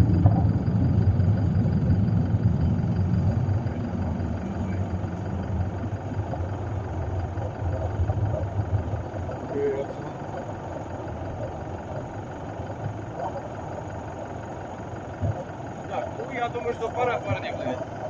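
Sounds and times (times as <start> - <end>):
low steady rumble: 0.0 - 18.0.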